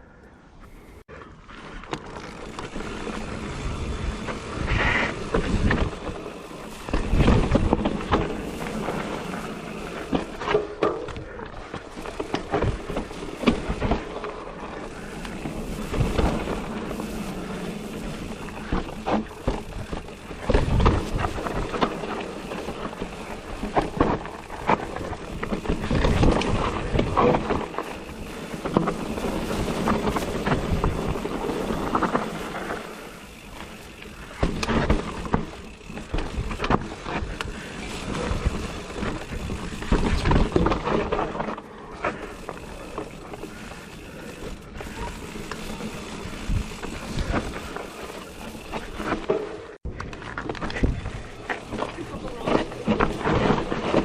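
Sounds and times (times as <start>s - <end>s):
bike tyre noise on trail: 0.0s - 54.0s
bike knocks and rattles: 1.8s - 54.0s.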